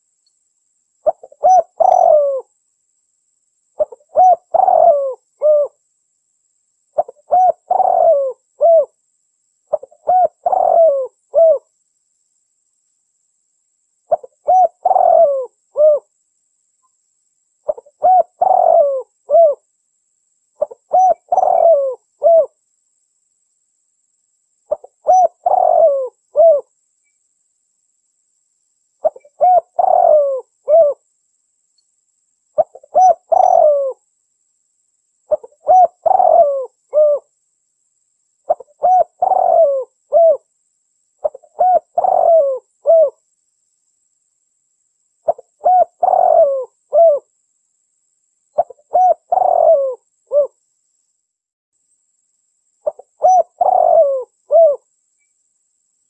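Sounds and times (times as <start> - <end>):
dove cooing: 1.0 - 2.5, 3.8 - 5.8, 7.0 - 9.0, 9.7 - 11.7, 14.1 - 16.1, 17.7 - 19.6, 20.6 - 22.6, 24.7 - 26.7, 29.0 - 31.0, 32.6 - 34.0, 35.3 - 37.3, 38.5 - 40.5, 41.2 - 43.2, 45.3 - 47.3, 48.6 - 50.6, 52.8 - 54.8.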